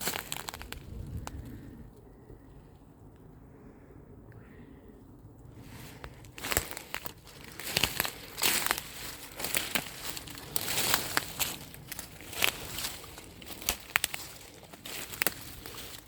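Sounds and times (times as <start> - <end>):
twigs snapping: 0.0 - 1.5, 5.9 - 16.0
footsteps through brush and leaves: 0.0 - 1.6, 5.6 - 16.0.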